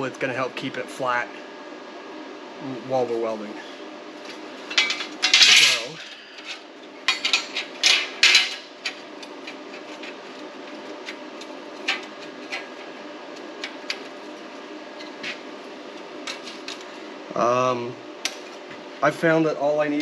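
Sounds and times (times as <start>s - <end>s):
steel parts clanking on metal: 4.6s - 10.2s.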